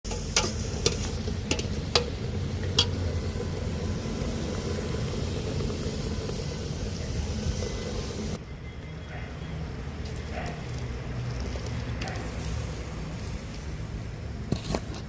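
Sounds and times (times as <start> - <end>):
curry sizzling and bubbling: 0.0 - 8.4, 9.6 - 14.6
steady low hum: 0.1 - 8.4.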